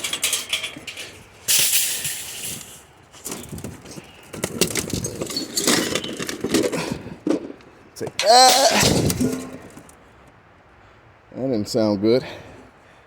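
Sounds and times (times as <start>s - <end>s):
junk knocking and rustling: 0.0s - 10.0s
rush of debris: 8.2s - 9.9s.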